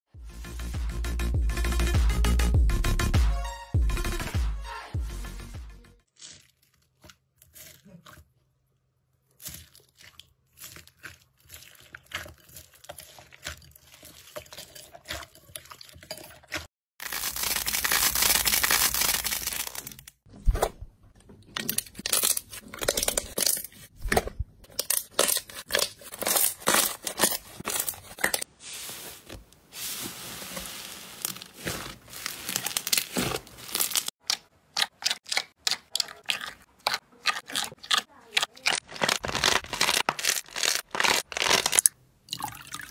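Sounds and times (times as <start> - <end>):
slime crackling and popping: 17.0 - 20.1, 31.2 - 34.1, 38.6 - 41.9.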